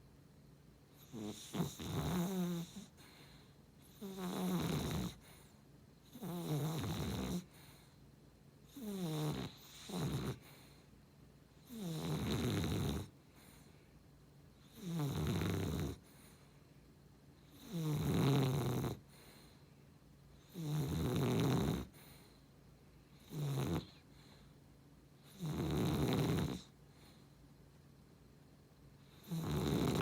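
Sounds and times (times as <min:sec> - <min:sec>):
dog snoring: 0:00.9 - 0:08.0, 0:08.6 - 0:10.9, 0:11.6 - 0:13.8, 0:14.6 - 0:16.5, 0:17.4 - 0:19.6, 0:20.3 - 0:22.4, 0:23.1 - 0:24.5, 0:25.2 - 0:27.2, 0:29.0 - 0:30.0.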